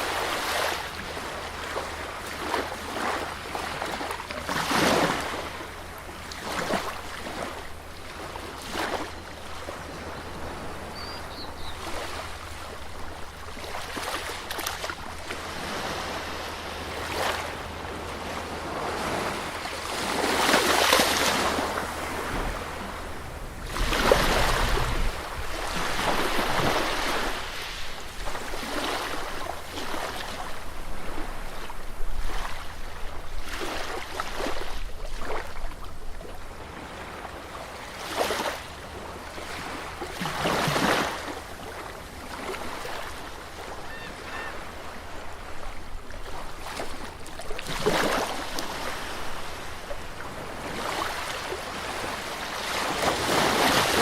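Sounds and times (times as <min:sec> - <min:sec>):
waves breaking on beach: 0:00.0 - 0:54.0
steady low rumble: 0:22.0 - 0:28.4.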